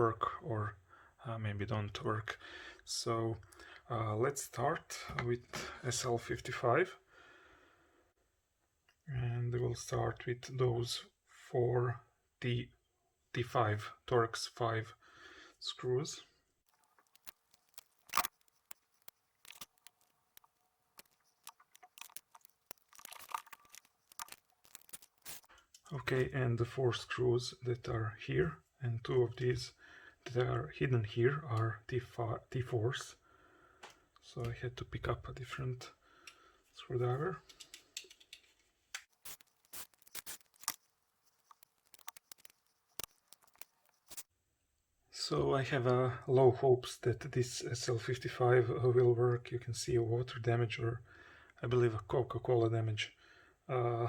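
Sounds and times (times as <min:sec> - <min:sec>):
screwdriver clicking and scraping: 0:16.9 - 0:25.5, 0:37.5 - 0:44.3
light clicks of plastic parts: 0:33.8 - 0:34.6, 0:37.4 - 0:39.1.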